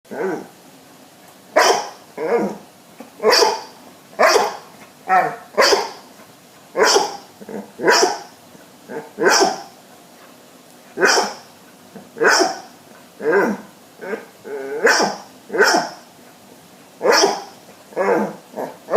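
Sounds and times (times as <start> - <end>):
dog barking: 1.6 - 2.5, 3.2 - 6.0, 6.8 - 7.2, 7.8 - 8.3, 9.2 - 9.7, 11.0 - 11.4, 12.2 - 12.7, 14.8 - 16.0, 17.0 - 18.9.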